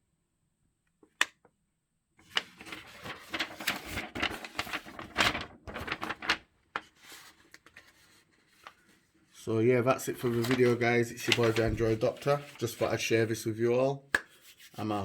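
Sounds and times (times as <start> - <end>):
manual pages turning: 2.2 - 9.3, 10.0 - 13.4
paper handling clicks: 2.3 - 7.9, 10.2 - 12.6.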